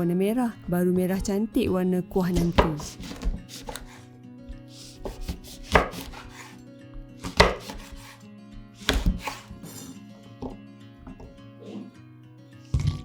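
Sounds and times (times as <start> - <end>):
faint background music: 0.0 - 13.0
knife chopping on cutting board: 2.3 - 4.0, 4.7 - 6.5, 7.2 - 8.2, 8.8 - 11.9.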